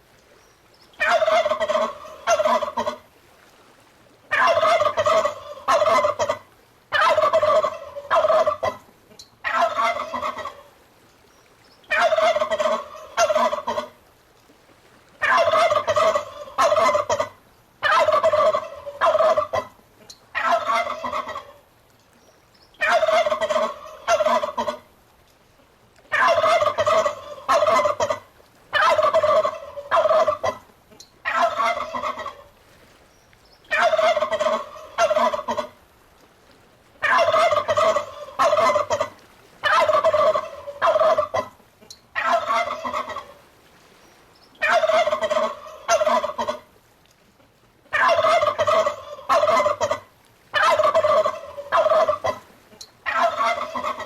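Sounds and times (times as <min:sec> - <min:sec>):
turkey gobbling: 0:01.0 - 0:03.0, 0:04.3 - 0:10.7, 0:11.9 - 0:13.9, 0:15.2 - 0:19.7, 0:20.4 - 0:21.6, 0:22.8 - 0:24.8, 0:26.1 - 0:32.5, 0:33.7 - 0:35.7, 0:37.0 - 0:43.4, 0:44.6 - 0:46.6, 0:47.9 - 0:54.0.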